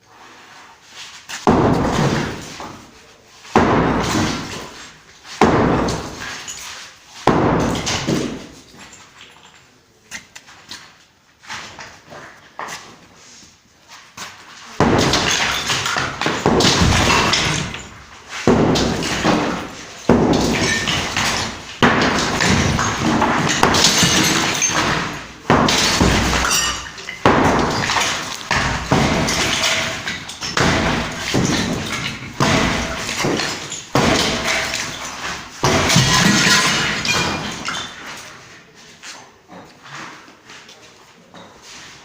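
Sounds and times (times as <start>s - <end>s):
debris crashing and clattering: 1.4s - 2.9s, 3.5s - 9.7s, 14.8s - 38.4s
heavy demolition blows: 14.8s - 38.0s.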